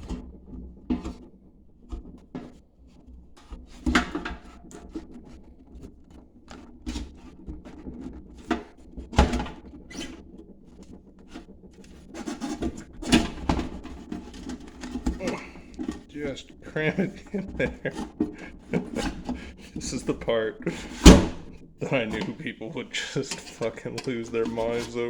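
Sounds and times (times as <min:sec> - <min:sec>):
parts clattering in metal can: 0:23.2 - 0:25.0.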